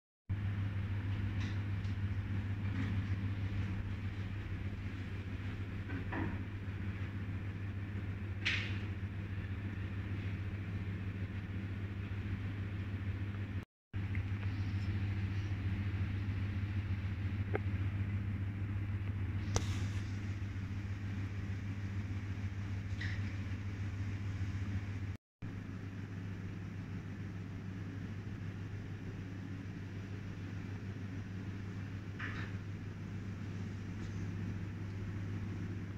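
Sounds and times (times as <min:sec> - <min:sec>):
low mechanical hum: 0:00.3 - 0:35.9
short hiss: 0:19.4 - 0:20.2.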